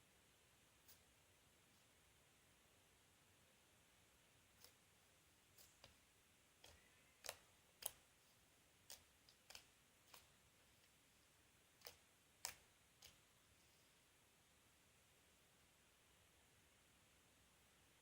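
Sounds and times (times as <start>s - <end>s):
slime clicking and popping: 6.6s - 8.0s, 8.8s - 10.3s.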